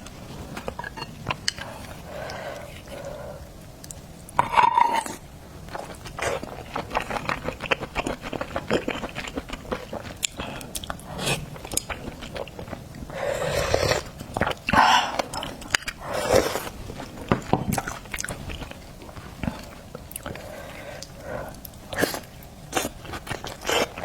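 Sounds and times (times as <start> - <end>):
wet chewing and smacking: 5.7 - 13.0, 14.0 - 24.0.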